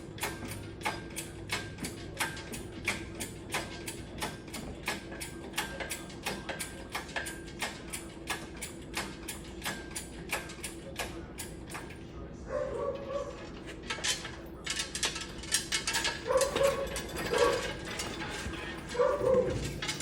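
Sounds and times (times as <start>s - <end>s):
ratchet clicking: 13.9s - 20.0s.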